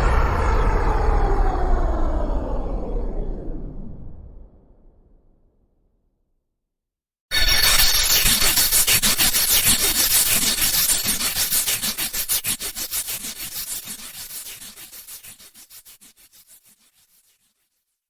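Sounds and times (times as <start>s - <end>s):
harsh hissy pulsing noise: 7.3s - 14.5s.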